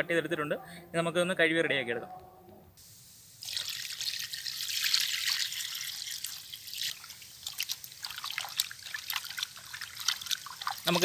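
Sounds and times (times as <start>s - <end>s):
tap water running: 3.4s - 11.0s
water splashing and dripping: 3.4s - 11.0s.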